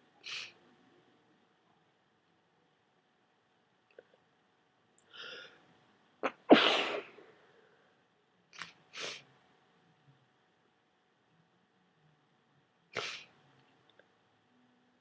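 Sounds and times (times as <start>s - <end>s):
person sneezing: 6.2s - 7.2s, 13.0s - 13.3s.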